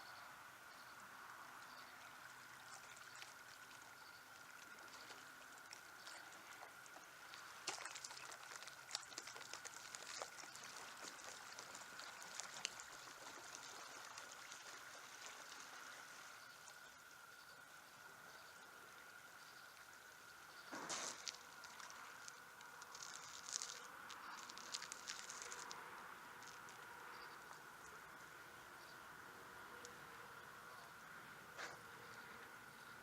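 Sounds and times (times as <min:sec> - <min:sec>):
faint high hum: 0:00.0 - 0:33.0
water trickling and lapping: 0:00.9 - 0:33.0
small splashes and drips: 0:01.6 - 0:17.3, 0:19.7 - 0:28.0.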